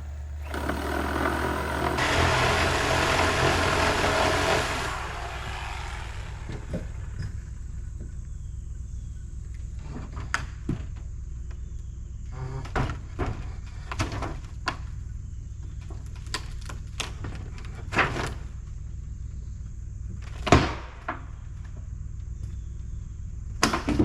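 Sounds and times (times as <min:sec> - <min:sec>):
knocks and thuds of wood: 0:00.4 - 0:07.4.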